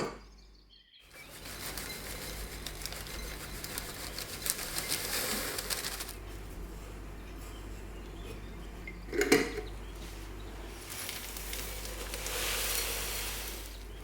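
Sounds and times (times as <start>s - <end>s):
crackling hiss with ticks: 1.4s - 6.2s, 10.8s - 13.9s.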